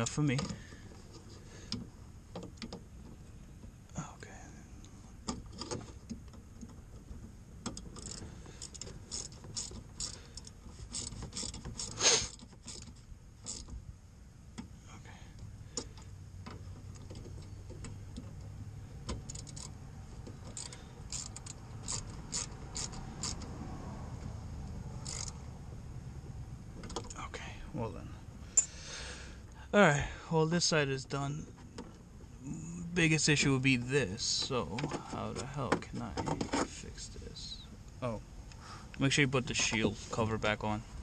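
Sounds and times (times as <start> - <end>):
hand tools clicking on plastic parts: 5.2 - 13.8, 15.4 - 23.5.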